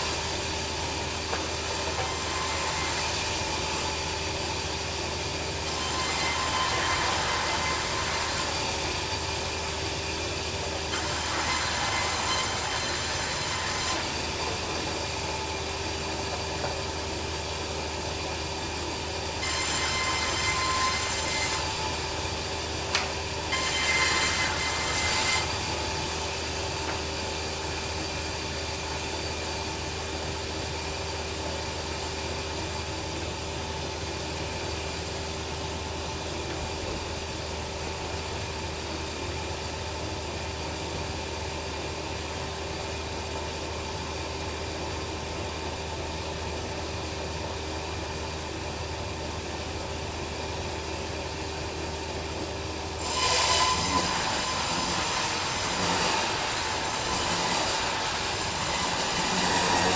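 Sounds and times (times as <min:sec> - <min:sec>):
bandsaw sawmill humming: 0:00.0 - 0:59.9
saw blade cutting log: 0:05.6 - 0:09.0, 0:10.9 - 0:15.1, 0:19.4 - 0:21.9, 0:22.9 - 0:25.9, 0:53.0 - 0:59.9.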